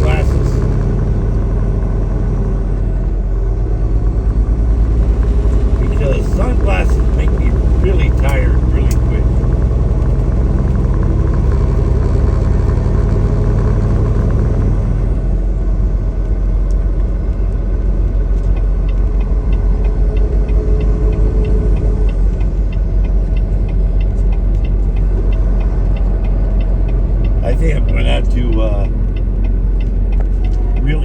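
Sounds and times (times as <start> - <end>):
truck engine drone from cab: 0.0 - 31.0
light even ticking: 16.2 - 31.0.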